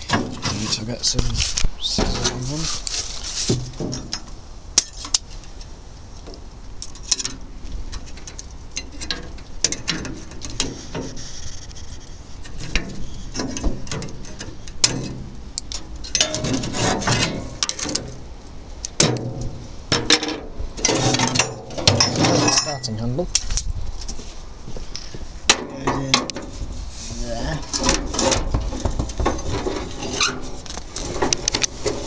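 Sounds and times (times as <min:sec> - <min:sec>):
packaging rubbing: 0:02.4 - 0:03.8
wind rumble on microphone: 0:19.2 - 0:32.0.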